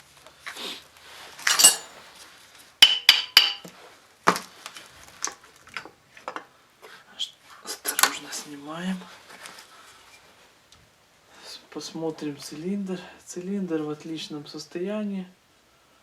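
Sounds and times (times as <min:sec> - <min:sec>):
metal tools clinking: 0:01.5 - 0:02.0.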